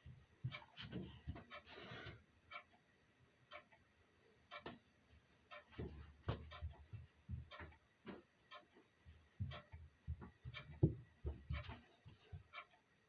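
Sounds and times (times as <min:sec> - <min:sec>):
clock ticking: 0:00.0 - 0:13.0
low thuds: 0:09.4 - 0:11.8.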